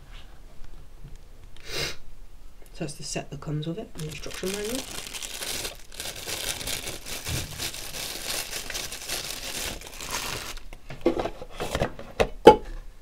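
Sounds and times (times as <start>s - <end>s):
packaging crinkling: 4.0s - 10.8s.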